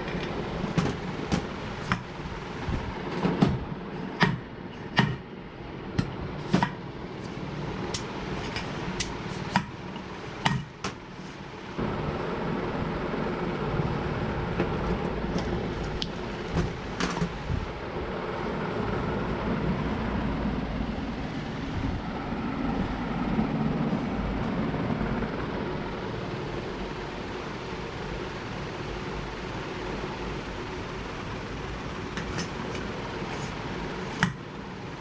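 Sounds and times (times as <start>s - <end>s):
vehicle engine rumbling: 4.6s - 28.2s.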